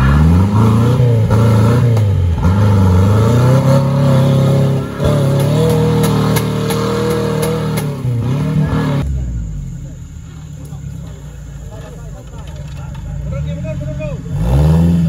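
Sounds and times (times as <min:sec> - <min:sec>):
car engine revving hard: 0:00.0 - 0:09.3, 0:13.5 - 0:15.0.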